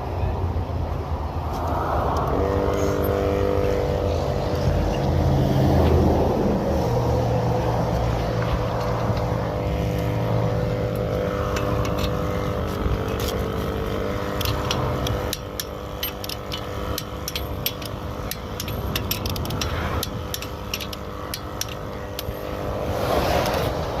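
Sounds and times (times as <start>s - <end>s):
highway traffic passing: 0.0s - 24.0s.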